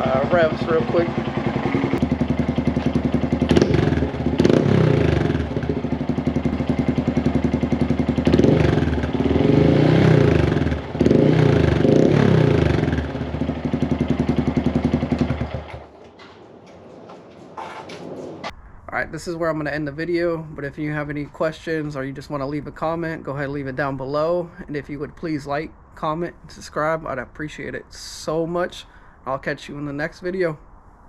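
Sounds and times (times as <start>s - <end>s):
motorcycle engine idling and revving: 0.0s - 16.8s.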